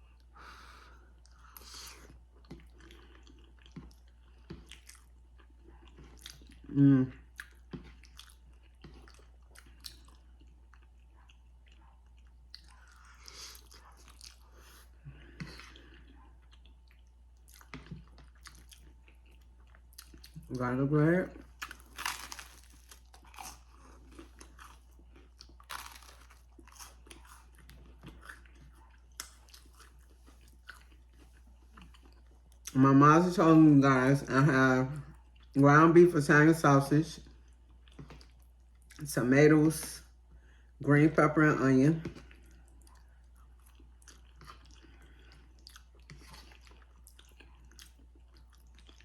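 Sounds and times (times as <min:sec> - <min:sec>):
faint chewing crunches: 0:00.0 - 0:32.8, 0:37.2 - 0:39.1, 0:42.0 - 0:49.0
crunchy bite into bread: 0:21.6 - 0:24.8, 0:25.5 - 0:27.5.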